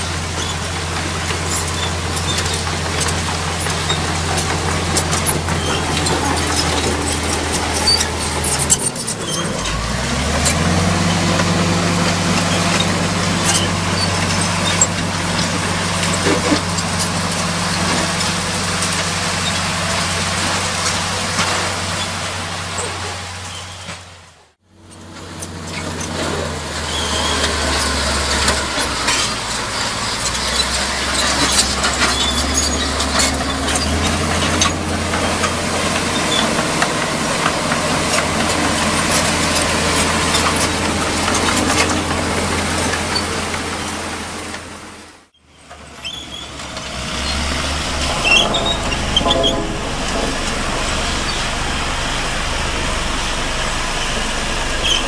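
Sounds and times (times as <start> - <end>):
metallic clanks and rattles: 0.0 - 9.8, 27.4 - 43.8, 45.5 - 55.0
diesel machinery running: 0.0 - 55.0.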